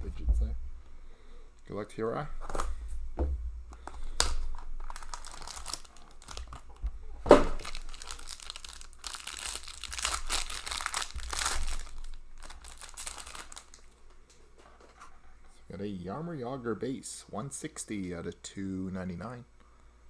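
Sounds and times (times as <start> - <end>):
plastic wrapping crinkling: 2.4 - 14.6.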